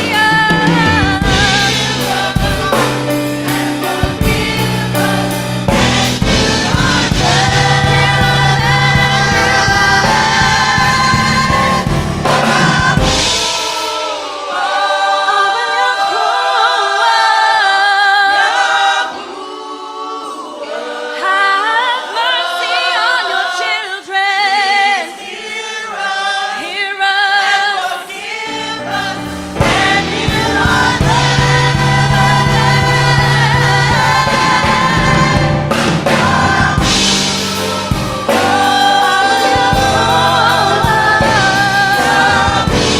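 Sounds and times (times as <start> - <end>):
gospel choir singing: 0.0 - 42.9.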